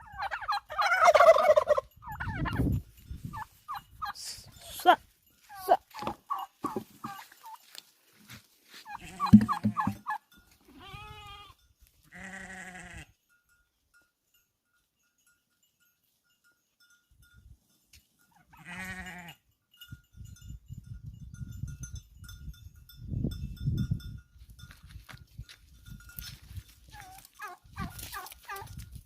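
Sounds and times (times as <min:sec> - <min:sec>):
goats bleating: 0:08.9 - 0:10.0, 0:10.8 - 0:13.1, 0:18.6 - 0:19.3.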